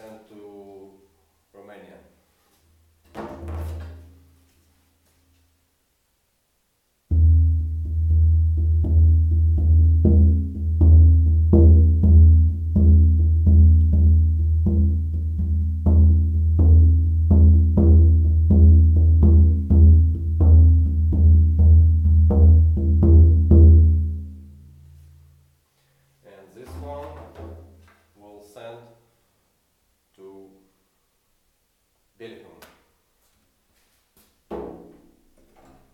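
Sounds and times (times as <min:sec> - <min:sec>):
drum beaten in deep booms: 0:07.1 - 0:24.0.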